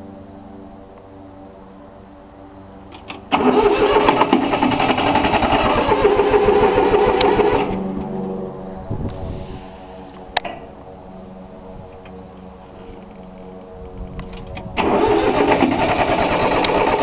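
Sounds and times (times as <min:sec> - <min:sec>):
diesel engine cranking: 0:02.9 - 0:08.1, 0:14.3 - 0:17.0.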